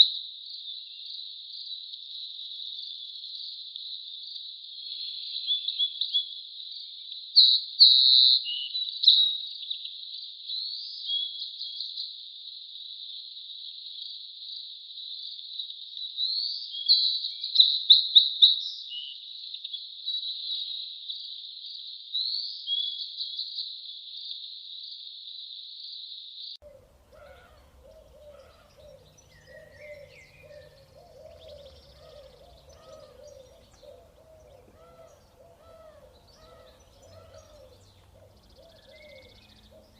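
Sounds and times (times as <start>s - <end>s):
birds chirping and singing: 26.6s - 39.9s
low repeated bird calls: 26.6s - 39.9s.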